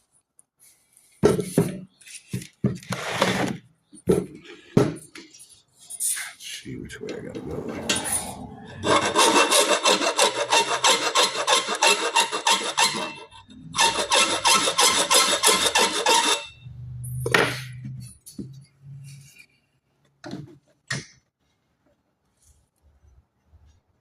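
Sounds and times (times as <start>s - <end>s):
hand file rasping: 8.8s - 16.6s.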